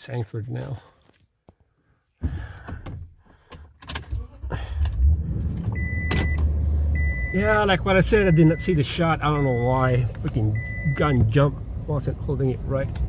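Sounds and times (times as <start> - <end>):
vehicle engine humming: 4.8 - 13.0.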